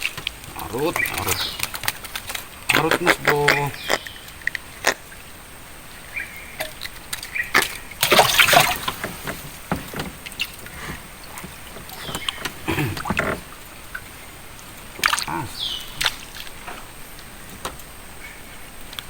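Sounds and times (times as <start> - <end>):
water splashing and sloshing: 0.0 - 19.0
small clicks and knocks: 8.7 - 13.6, 17.5 - 18.0.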